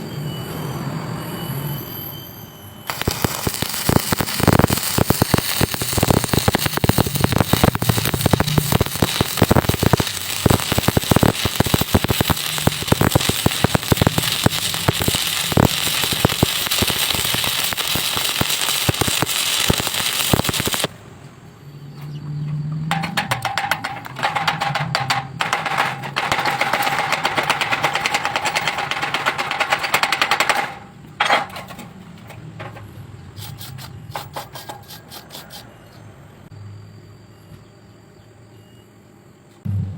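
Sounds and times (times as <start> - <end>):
welding arc crackling: 2.9 - 20.9, 23.0 - 30.8.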